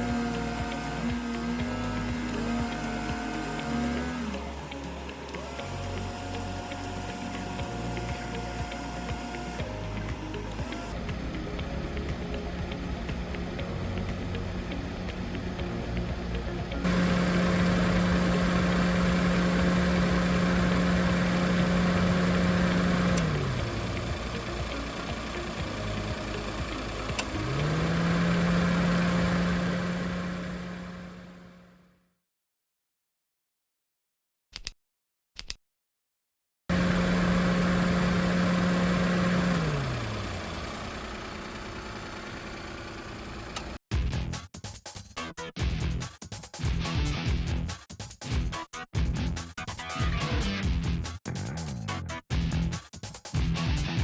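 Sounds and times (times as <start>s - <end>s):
steady loud hum: 0.0s - 31.5s
truck engine running: 0.0s - 31.7s, 36.7s - 43.8s.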